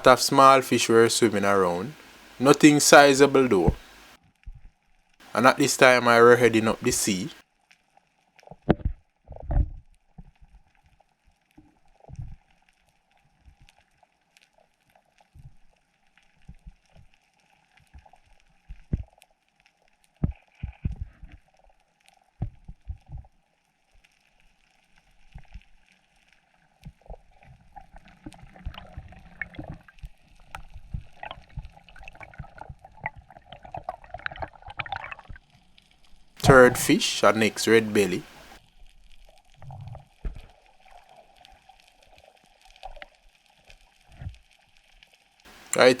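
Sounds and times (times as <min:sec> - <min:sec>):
water sloshing and gurgling: 0:26.8 - 0:36.4.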